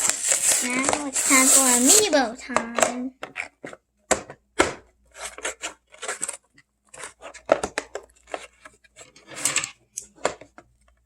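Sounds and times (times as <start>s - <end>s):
packaging clicks and taps: 0.0s - 1.5s, 2.1s - 8.8s
plastic and cardboard crinkling: 0.0s - 3.8s, 5.0s - 11.0s.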